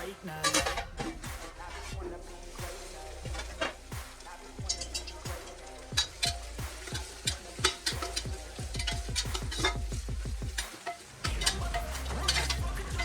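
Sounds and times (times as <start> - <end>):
falling bass notes: 0.0 - 7.2, 11.3 - 13.0
curry sizzling: 0.0 - 13.0.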